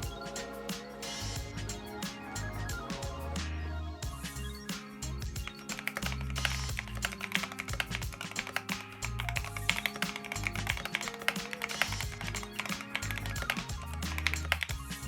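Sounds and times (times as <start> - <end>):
background music with bass: 0.0 - 15.0
mechanical keyboard typing: 5.7 - 14.8.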